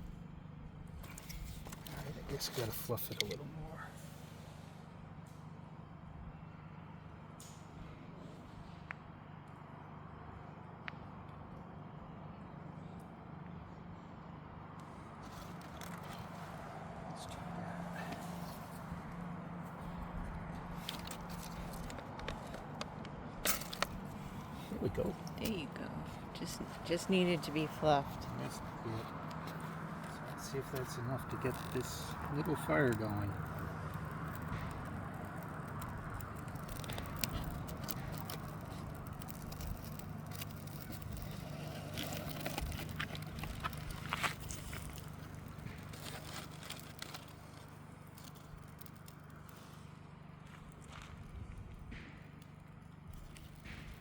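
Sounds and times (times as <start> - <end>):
fire crackling with sharp pops: 14.8 - 54.0
ferro rod scrapes: 27.8 - 48.4.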